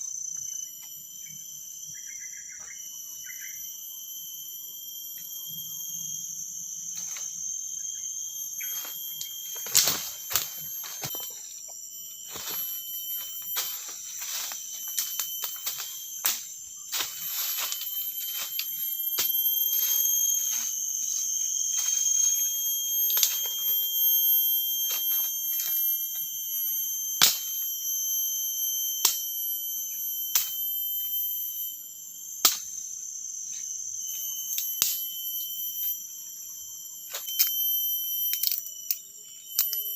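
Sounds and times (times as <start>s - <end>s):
insects droning: 0.0s - 39.9s
sharp knocks and cracks: 8.8s - 11.3s, 27.2s - 27.6s, 32.4s - 32.7s.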